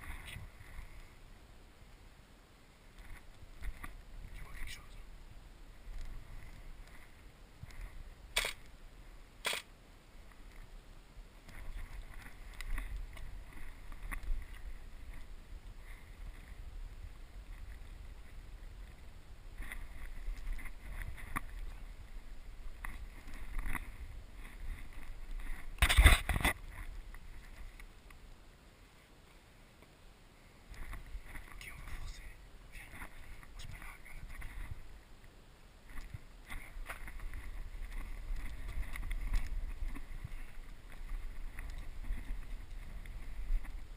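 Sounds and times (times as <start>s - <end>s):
faint rustling of movement: 0.0s - 43.9s.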